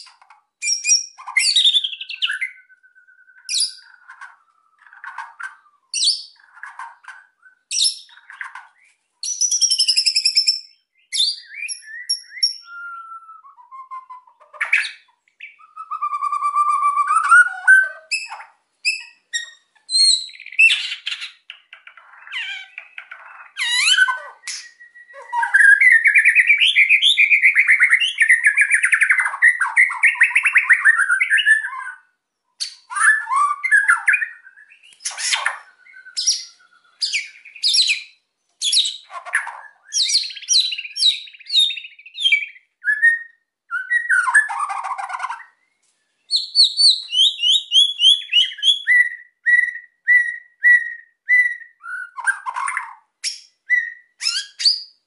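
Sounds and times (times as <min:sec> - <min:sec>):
songbird singing: 0:00.0 - 0:55.0.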